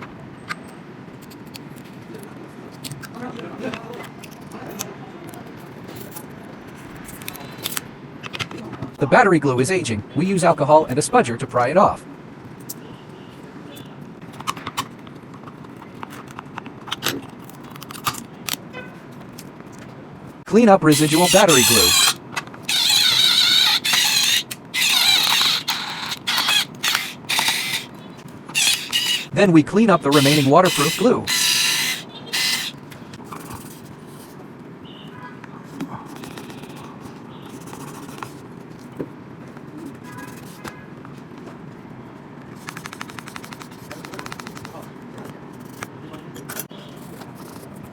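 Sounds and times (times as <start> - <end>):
tool prying clicks and scrapes: 20.9 - 29.4, 30.1 - 32.9.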